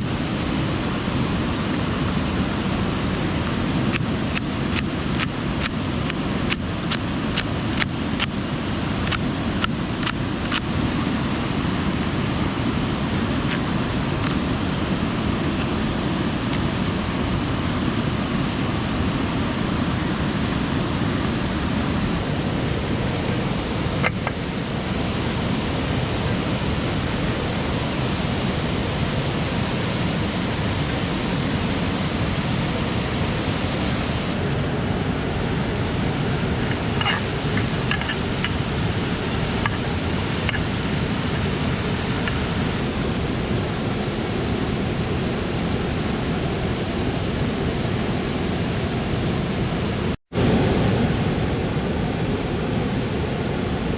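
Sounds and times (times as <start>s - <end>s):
stream and waterfall rushing: 0.0s - 53.9s.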